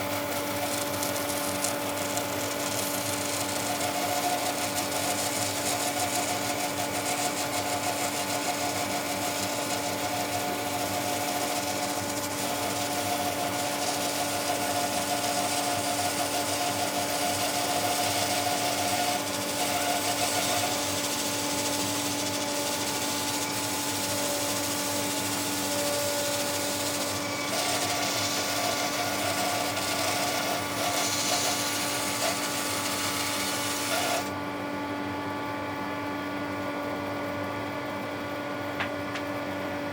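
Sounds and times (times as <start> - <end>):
power tool motor hum: 0.0 - 34.4
power tool hissing on wood: 15.0 - 34.3.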